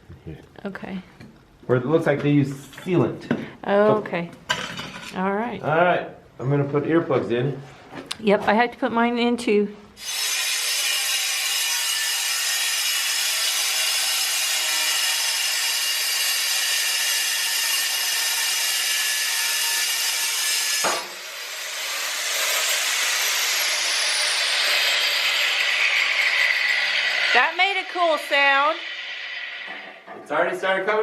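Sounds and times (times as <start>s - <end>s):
angle grinder cutting steel: 10.0s - 30.1s.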